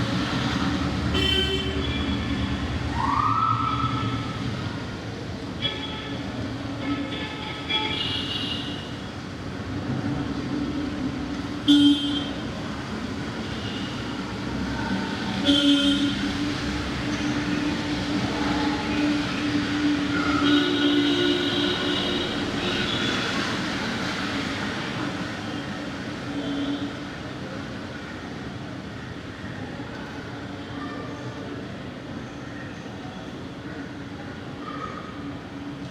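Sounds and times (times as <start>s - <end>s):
street traffic hum: 0.0s - 35.9s
vehicle horns honking: 1.1s - 2.4s, 5.6s - 9.0s, 11.6s - 12.4s, 15.4s - 16.3s, 20.2s - 23.5s.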